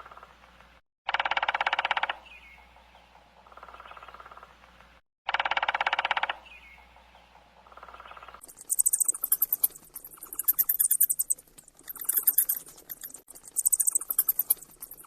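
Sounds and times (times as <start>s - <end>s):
fast rattling tapping: 8.4s - 15.0s
rats squeaking: 8.4s - 15.0s.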